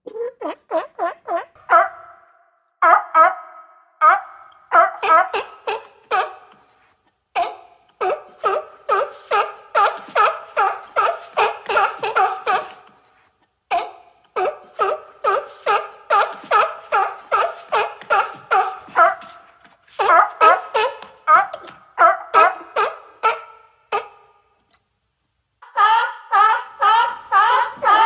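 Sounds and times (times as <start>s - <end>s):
seal barking: 0.4s - 6.7s, 7.4s - 13.0s, 13.7s - 24.3s, 25.8s - 28.0s.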